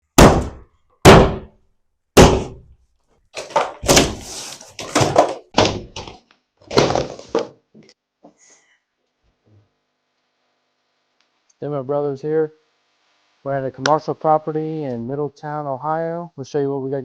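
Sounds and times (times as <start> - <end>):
heavy blows on walls: 0.0 - 1.5, 2.2 - 2.7
demolition crashes: 3.4 - 7.5.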